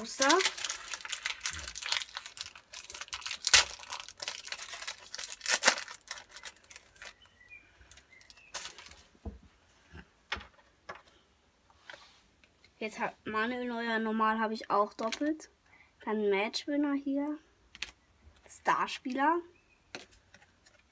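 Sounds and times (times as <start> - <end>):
foil pack tearing and crinkling: 0.0 - 7.2, 8.3 - 9.0.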